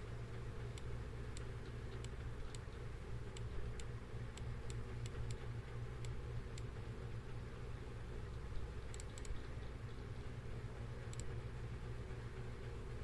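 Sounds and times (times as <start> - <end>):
low steady hum: 0.0 - 13.0
computer mouse clicks: 8.9 - 9.4, 11.1 - 11.4.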